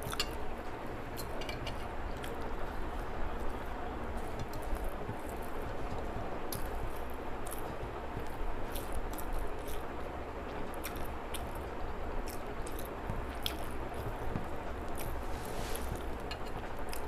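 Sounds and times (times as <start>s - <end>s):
steady low hum: 0.0s - 17.0s
person chewing food: 6.5s - 10.1s, 10.8s - 11.6s, 12.2s - 17.0s.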